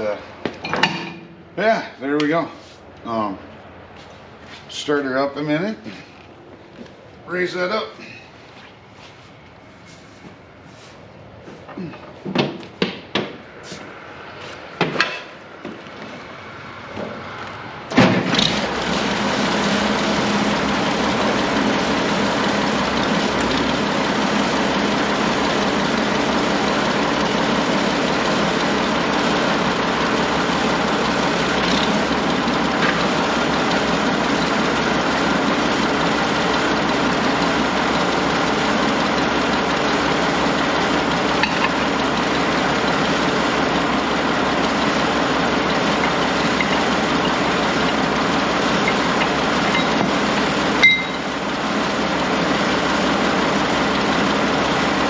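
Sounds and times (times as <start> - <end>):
knocks: 12.2 - 13.4
tractor engine starting and idling: 17.3 - 55.0.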